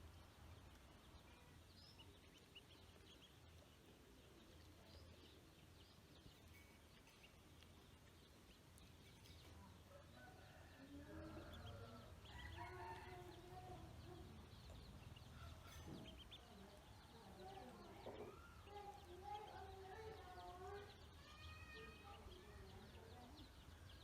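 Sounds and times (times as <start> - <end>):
ducklings peeping: 0.0 - 24.0.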